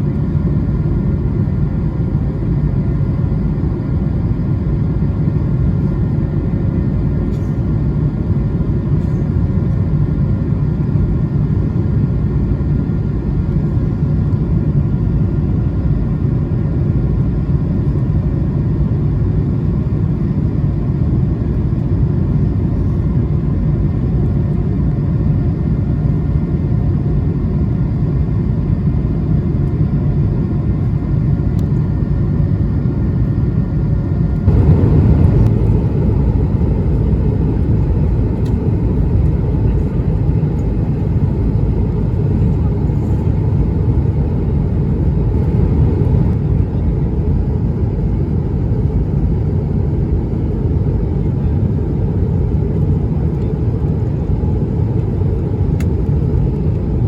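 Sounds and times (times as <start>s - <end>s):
deep rumble of airflow and engines: 0.0s - 57.0s
faint steady whining tones: 33.8s - 57.0s.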